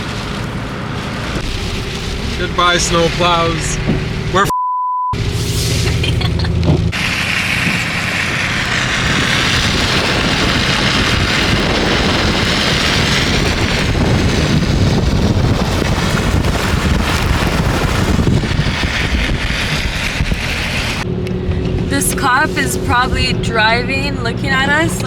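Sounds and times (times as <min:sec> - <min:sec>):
truck road noise: 0:00.0 - 0:04.5, 0:05.1 - 0:25.0
wind buffeting microphone: 0:07.6 - 0:25.0.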